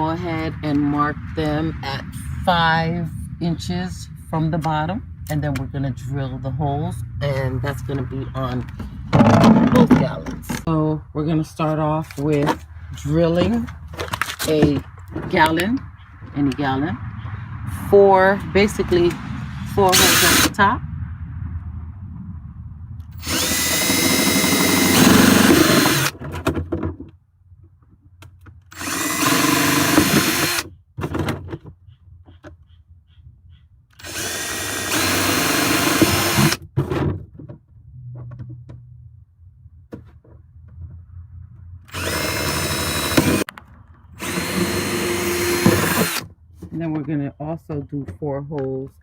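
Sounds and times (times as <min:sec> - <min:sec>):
power drill boring through plastic: 0:19.9 - 0:20.6, 0:23.2 - 0:26.2, 0:28.7 - 0:30.7, 0:34.0 - 0:36.6, 0:41.9 - 0:43.5, 0:44.2 - 0:46.3.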